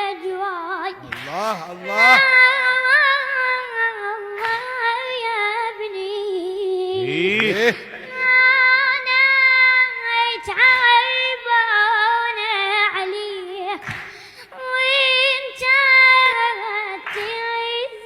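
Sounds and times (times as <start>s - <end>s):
person singing a mournful lament: 1.0s - 2.6s, 6.9s - 8.6s.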